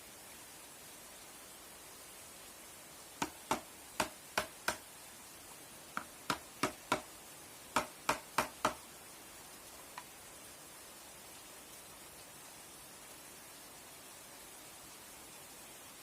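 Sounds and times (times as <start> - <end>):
light hammer taps: 3.2 - 4.8, 6.0 - 7.1, 7.8 - 8.8.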